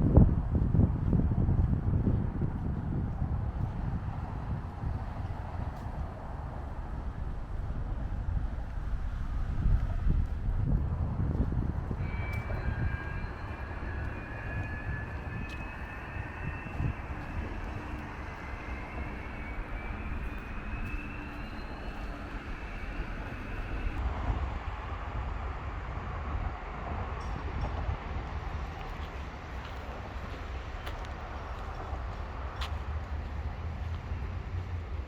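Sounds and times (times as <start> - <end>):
heavy low rumble: 0.0 - 35.0
wind on microphone: 0.0 - 35.0
jet engines whining: 12.0 - 24.0.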